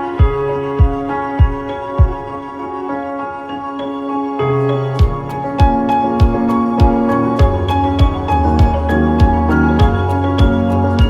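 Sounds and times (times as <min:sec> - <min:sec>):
instrument chords: 0:00.0 - 0:11.0
kick drum beat: 0:00.2 - 0:02.4, 0:05.0 - 0:11.0.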